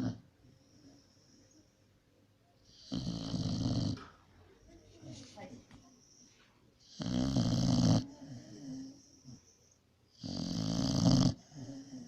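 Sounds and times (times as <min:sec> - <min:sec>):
dog snoring: 0:00.0 - 0:01.5, 0:02.6 - 0:04.1, 0:06.8 - 0:12.0
soft breathing: 0:00.4 - 0:02.0, 0:04.3 - 0:06.8.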